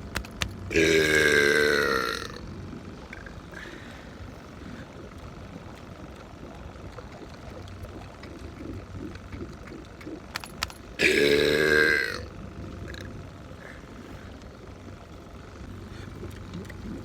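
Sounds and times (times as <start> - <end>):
motorboat engine rumble: 0.0 - 17.0
loud human burp: 0.7 - 2.4, 11.0 - 12.3.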